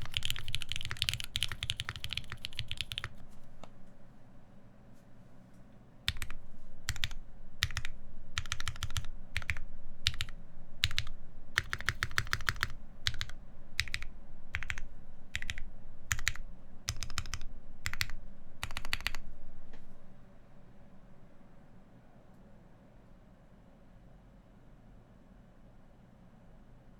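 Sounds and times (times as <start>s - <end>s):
mechanical keyboard typing: 0.0s - 3.8s, 6.1s - 19.2s.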